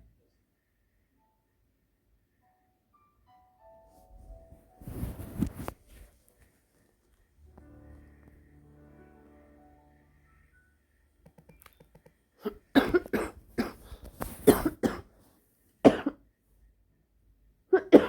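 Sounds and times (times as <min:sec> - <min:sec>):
woman coughing: 0:12.4 - 0:15.1, 0:15.9 - 0:16.2, 0:17.8 - 0:18.0.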